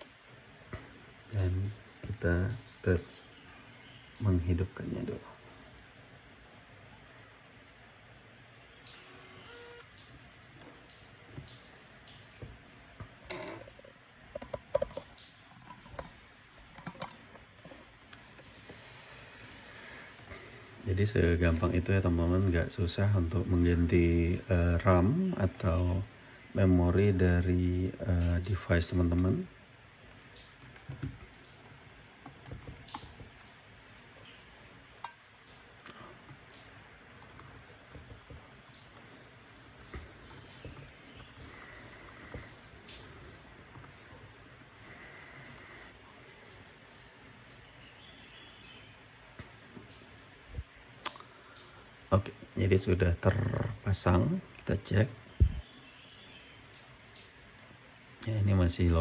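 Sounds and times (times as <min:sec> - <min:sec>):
laptop keyboard clicks and taps: 0:11.3 - 0:17.3, 0:30.4 - 0:33.6.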